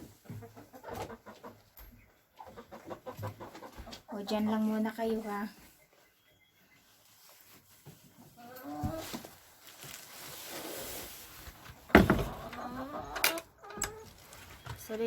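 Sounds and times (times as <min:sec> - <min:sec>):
door banging shut: 0:11.9 - 0:12.4.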